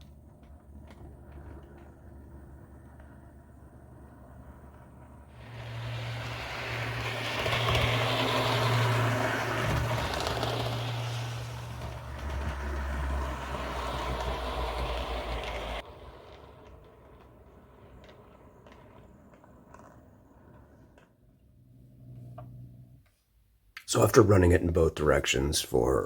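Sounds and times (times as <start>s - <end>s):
model train motor whirring: 4.2s - 21.0s.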